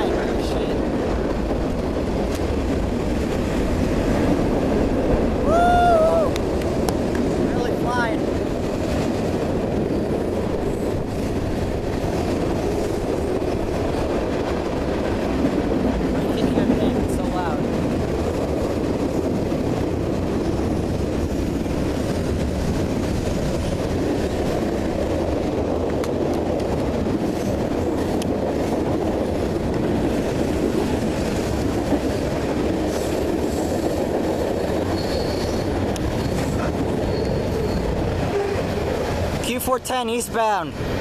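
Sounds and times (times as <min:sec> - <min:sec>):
freight train rumbling on rails: 0:00.0 - 0:41.0
high wheel squeal: 0:34.9 - 0:38.7.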